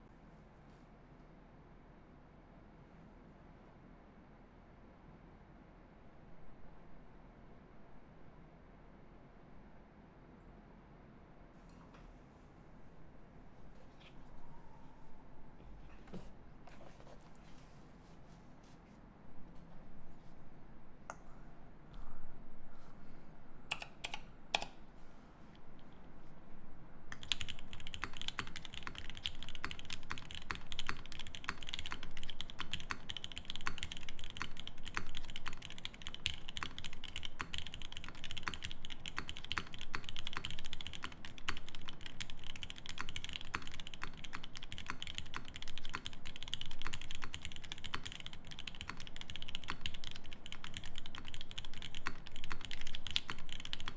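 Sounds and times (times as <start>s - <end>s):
mechanical keyboard typing: 23.7s - 24.8s, 27.1s - 53.9s.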